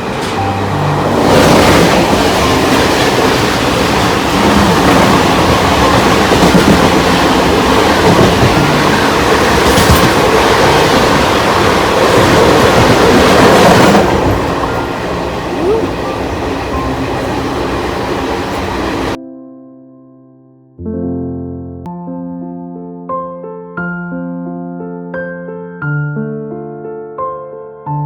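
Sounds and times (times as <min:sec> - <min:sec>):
passenger train rumbling on track: 0:00.0 - 0:19.2.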